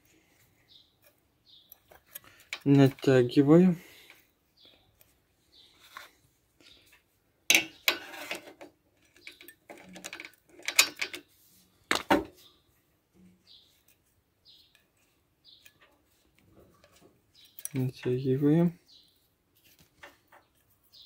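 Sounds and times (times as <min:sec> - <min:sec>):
metal tools clinking and scraping: 0:07.5 - 0:11.3, 0:16.8 - 0:18.3.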